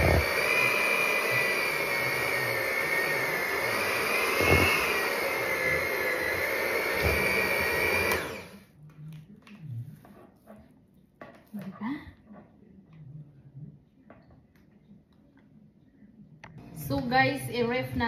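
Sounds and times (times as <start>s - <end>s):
electric mixer beating dough: 0.0s - 8.6s.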